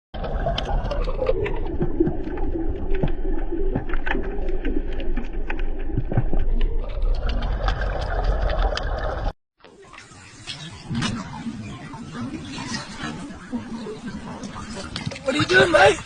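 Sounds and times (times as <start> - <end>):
steady low rumble: 0.2 - 9.3.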